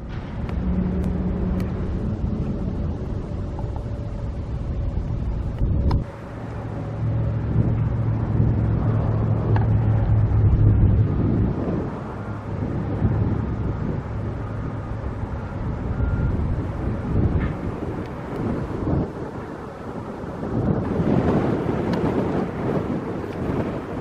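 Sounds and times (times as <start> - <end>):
low engine hum: 0.0 - 24.0
wind rumbling on microphone: 0.0 - 24.0.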